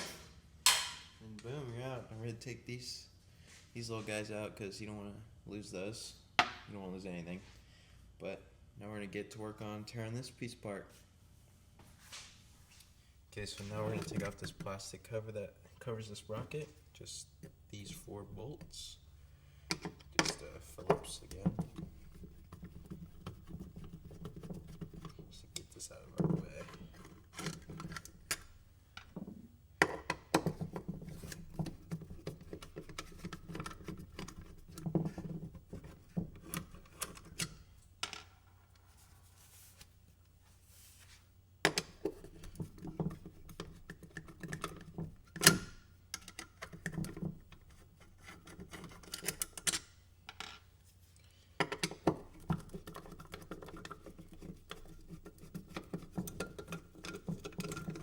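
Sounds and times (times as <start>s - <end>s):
screwdriver clicks and scrapes: 30.4s - 37.6s, 41.7s - 49.9s, 51.7s - 58.0s.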